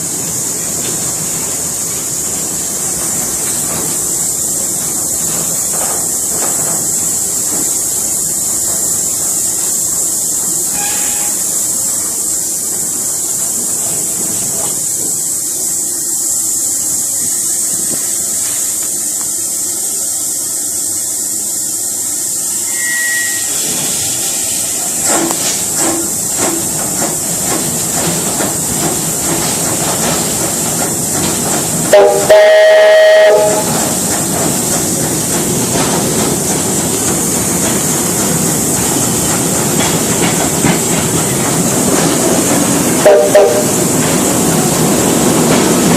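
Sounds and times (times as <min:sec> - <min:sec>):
steam train hissing: 0:00.0 - 0:45.9
wheel clicks over rail joints: 0:00.6 - 0:10.1, 0:24.7 - 0:45.9
steam train whistle blast: 0:10.7 - 0:11.6, 0:22.5 - 0:24.0, 0:31.9 - 0:33.8, 0:43.0 - 0:43.8.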